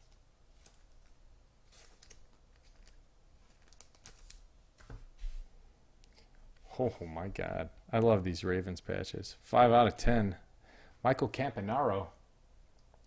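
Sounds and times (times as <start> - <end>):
trading cards rustling and clicking: 0.0 - 5.0.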